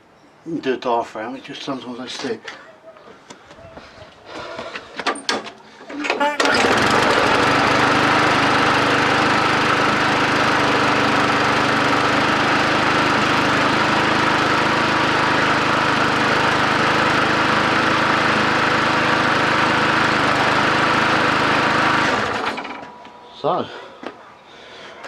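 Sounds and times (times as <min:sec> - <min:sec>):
lawn mower engine running: 0:05.8 - 0:23.3.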